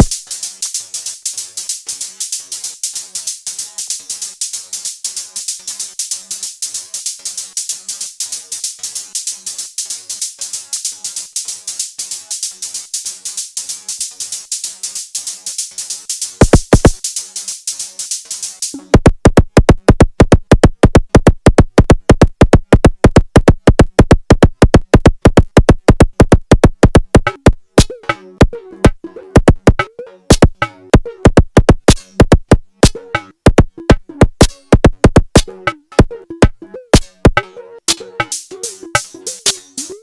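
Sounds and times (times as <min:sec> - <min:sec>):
sharp electronic drum hits: 0:16.4 - 0:17.0, 0:18.9 - 0:37.4.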